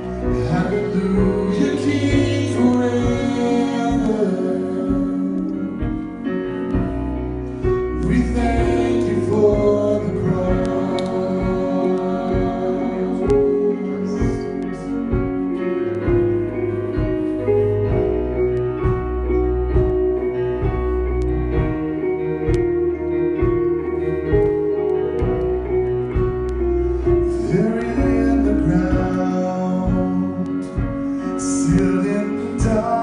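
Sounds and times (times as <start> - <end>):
worship band instrumental: 0.0 - 33.0.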